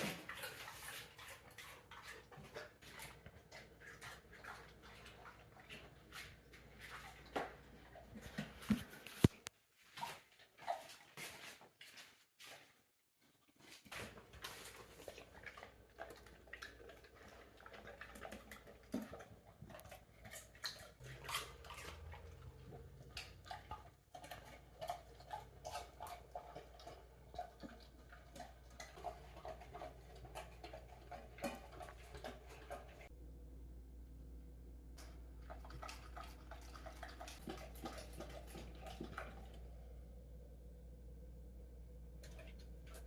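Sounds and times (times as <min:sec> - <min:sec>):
dog chewing fruit: 0:13.8 - 0:33.0
low background hum: 0:14.1 - 0:43.0.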